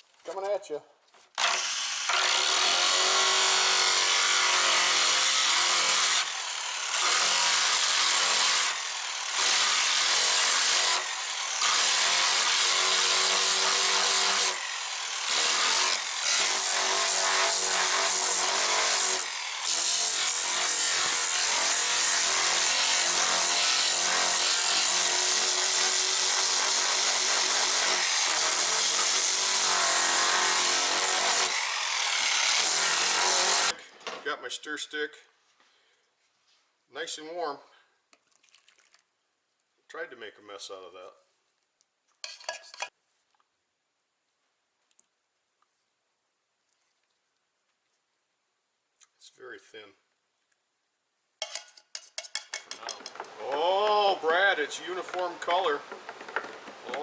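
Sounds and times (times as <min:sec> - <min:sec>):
electric power tool running: 0:01.4 - 0:23.4.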